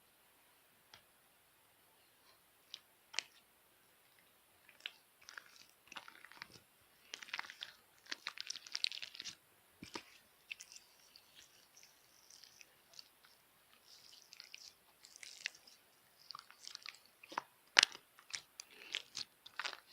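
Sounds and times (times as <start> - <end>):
slime squeezed by hand crackling: 4.7 - 19.9.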